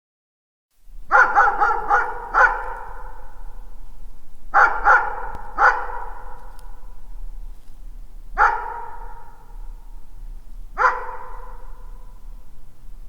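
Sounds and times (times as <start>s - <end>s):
distant dog barking with echo: 1.1s - 3.8s, 4.5s - 7.1s, 8.4s - 10.0s, 10.8s - 12.6s.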